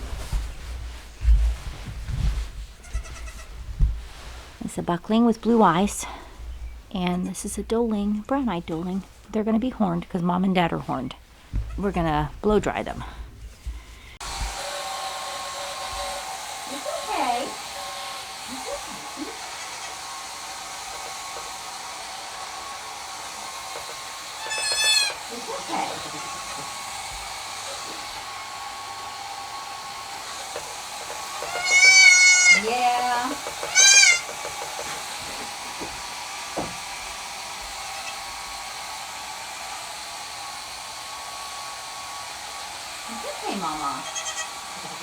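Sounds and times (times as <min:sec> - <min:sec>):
faint goat kid calls: 0:02.8 - 0:03.6, 0:24.4 - 0:26.5, 0:31.4 - 0:34.3, 0:43.9 - 0:44.6
hair dryer running: 0:14.2 - 0:45.0.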